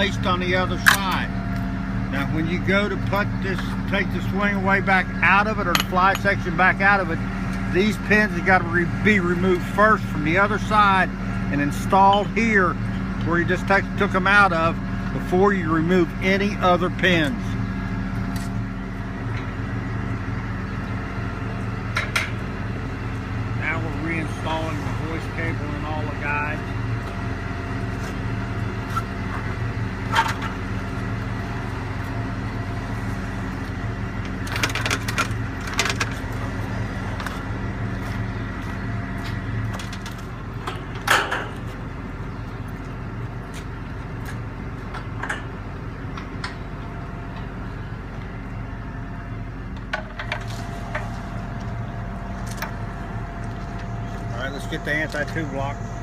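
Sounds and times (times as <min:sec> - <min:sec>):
crane engine idling: 0:00.0 - 0:56.0.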